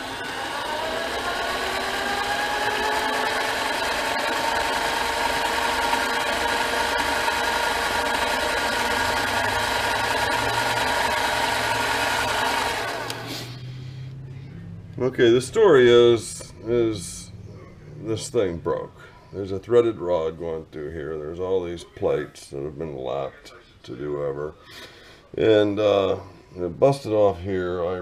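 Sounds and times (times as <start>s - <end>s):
metal lathe motor whine: 0.0s - 13.5s.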